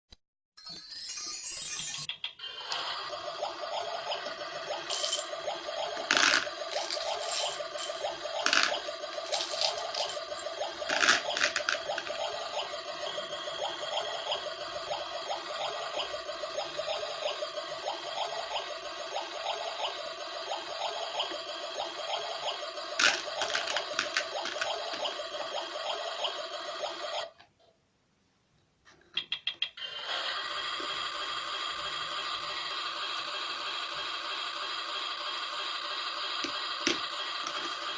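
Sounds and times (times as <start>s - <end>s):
looped electronic water noise: 3.0s - 27.0s
plastic clicks: 23.0s - 25.1s.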